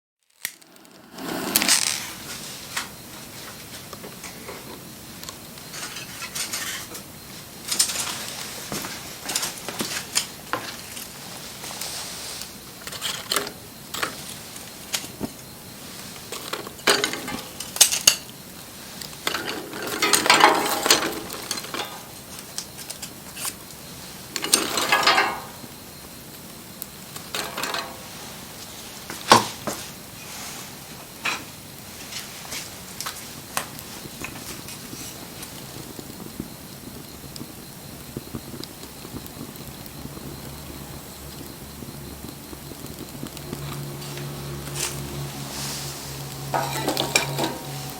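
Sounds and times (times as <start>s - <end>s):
wood fire crackling and popping: 0.2s - 47.9s
low steady hiss: 0.4s - 47.9s.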